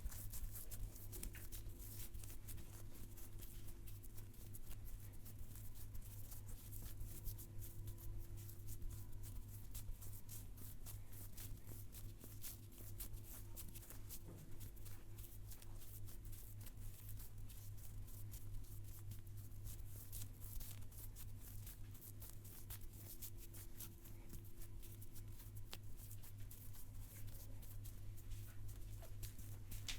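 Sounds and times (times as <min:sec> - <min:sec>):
low electrical hum: 0:00.0 - 0:29.9
hands rubbing hair and skin: 0:20.1 - 0:29.9.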